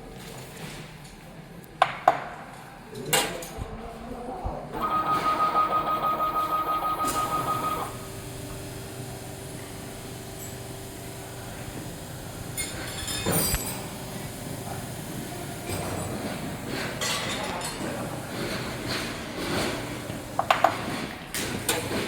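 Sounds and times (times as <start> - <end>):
machine humming: 4.7 - 13.0
machine motor whining and pulsing: 4.7 - 13.0.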